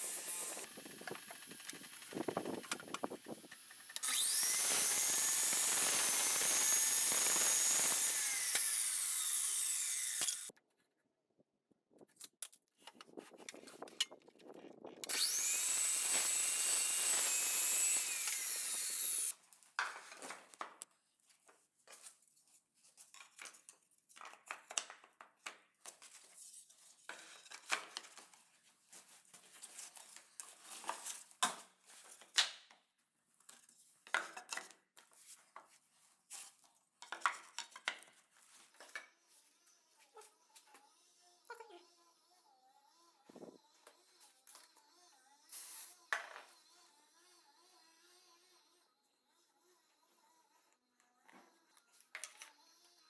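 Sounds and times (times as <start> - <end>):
power tool whining: 0.0 - 10.5, 15.0 - 19.3.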